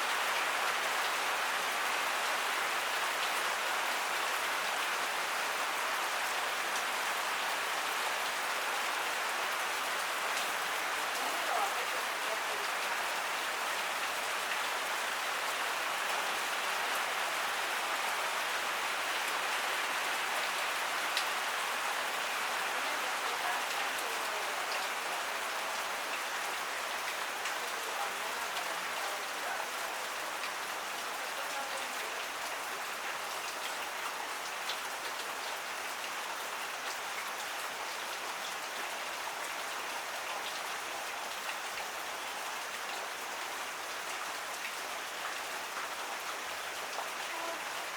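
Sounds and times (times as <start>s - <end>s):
heavy rain hissing: 9.1s - 33.3s.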